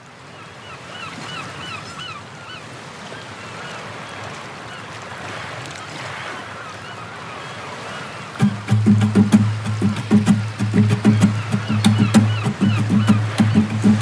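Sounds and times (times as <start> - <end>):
surf: 2.8 - 14.0
strong sea wind: 3.0 - 14.0
bird calling short repeated notes: 8.4 - 14.0.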